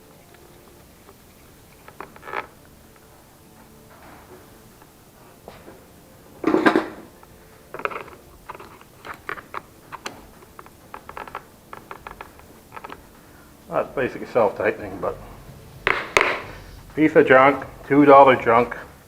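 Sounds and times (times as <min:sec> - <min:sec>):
plastic and metal parts clicking: 0:00.1 - 0:03.6, 0:06.4 - 0:13.3.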